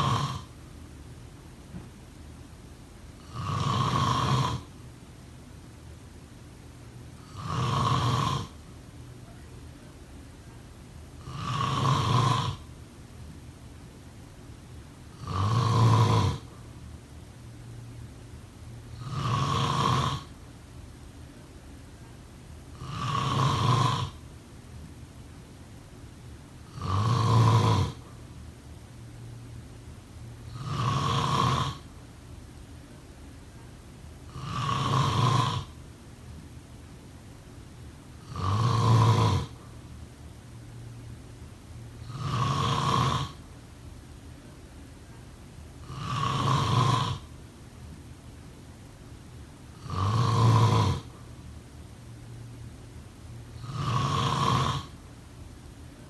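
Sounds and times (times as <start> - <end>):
person snoring: 0.0 - 0.6, 3.2 - 4.8, 7.2 - 8.6, 11.2 - 12.7, 15.1 - 16.6, 18.9 - 20.3, 22.7 - 24.2, 26.7 - 28.1, 30.5 - 32.0, 34.3 - 35.8, 38.2 - 39.8, 42.0 - 43.5, 45.8 - 47.4, 49.8 - 51.2, 53.6 - 55.0.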